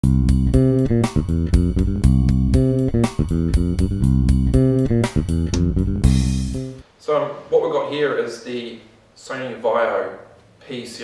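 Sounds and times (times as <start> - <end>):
plucked bass and guitar music: 0.0 - 6.8.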